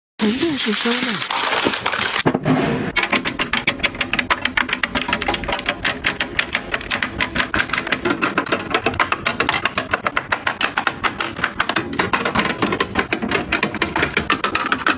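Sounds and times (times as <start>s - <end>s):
rapid light clicks and taps: 3.0s - 14.9s.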